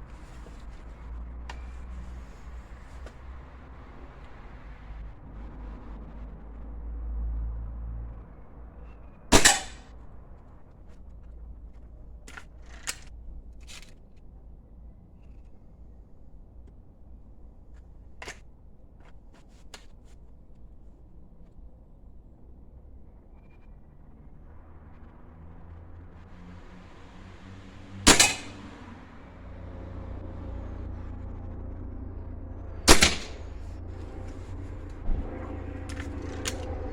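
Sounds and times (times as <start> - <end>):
air rifle shot: 9.3 - 9.9, 28.1 - 28.8, 32.9 - 34.4.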